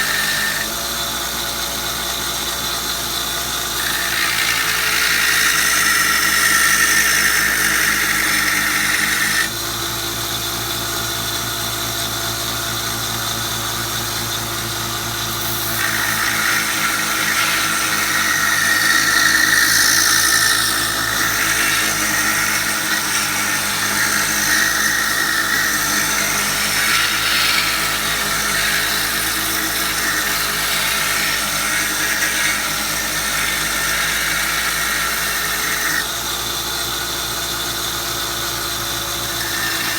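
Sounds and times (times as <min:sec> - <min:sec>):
blade grinding squeal: 0:00.0 - 0:10.6, 0:11.2 - 0:39.9
belt sander motor hum: 0:00.0 - 0:39.9.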